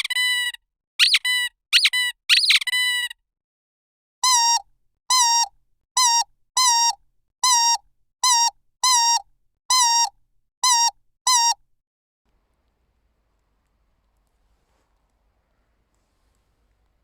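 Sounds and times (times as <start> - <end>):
squeaky dog toy: 0.0 - 3.2, 4.2 - 11.6.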